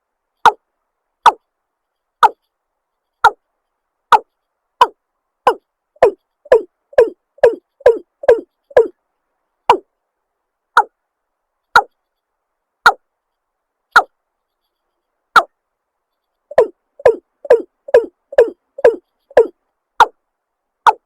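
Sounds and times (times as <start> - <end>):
bird calling deep kok notes: 4.8 - 8.9, 16.5 - 20.1.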